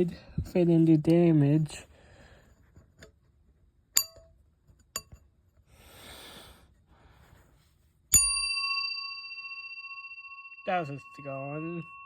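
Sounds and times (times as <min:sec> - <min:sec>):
fire alarm bell gong ringing: 0:08.2 - 0:12.0.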